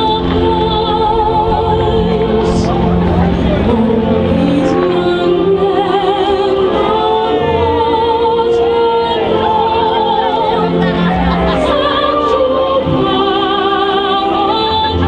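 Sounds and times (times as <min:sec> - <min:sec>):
musical accompaniment: 0:00.0 - 0:15.0
woman singing with vibrato: 0:00.0 - 0:15.0.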